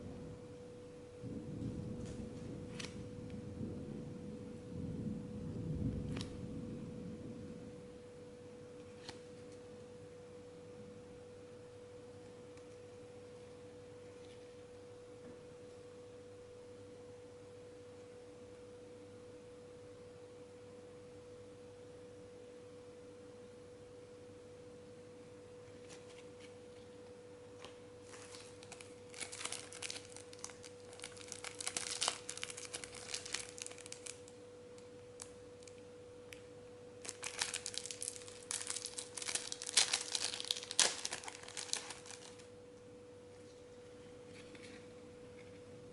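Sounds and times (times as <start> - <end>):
packaging crinkling and tearing: 27.6 - 35.8, 37.0 - 42.5.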